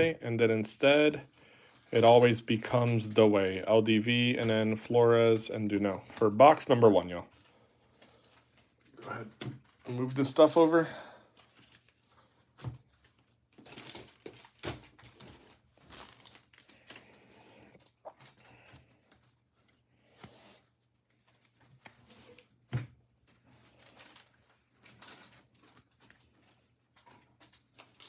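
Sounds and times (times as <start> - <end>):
wrappers rustling and crinkling: 5.6 - 28.0.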